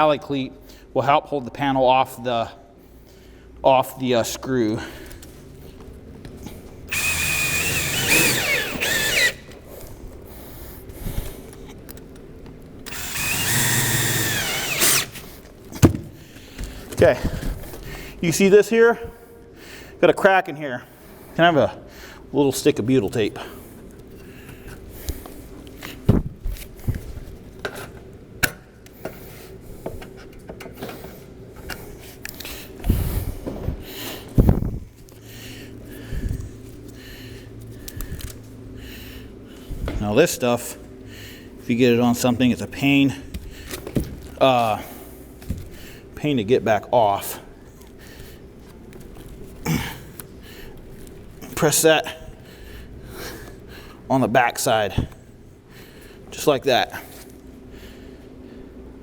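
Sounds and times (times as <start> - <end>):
faint steady hum: 0.0 - 59.0
power drill whining: 6.9 - 9.6, 12.9 - 15.3.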